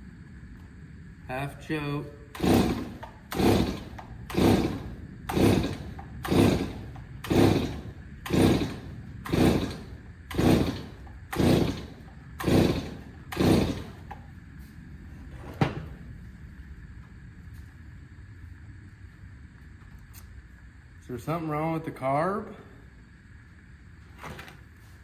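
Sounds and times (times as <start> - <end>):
chainsaw starter cord pulls: 2.3 - 14.2.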